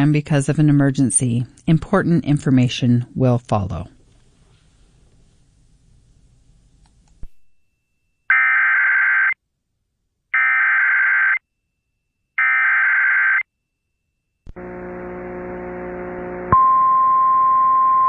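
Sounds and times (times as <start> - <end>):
steady hum with hiss: 0.0 - 7.2, 14.5 - 16.6.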